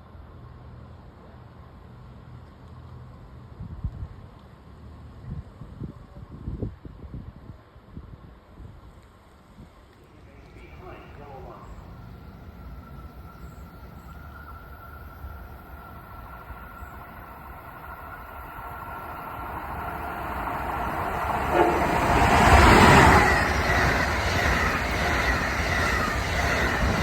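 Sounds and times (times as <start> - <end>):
train passing on tracks: 6.7 - 27.0.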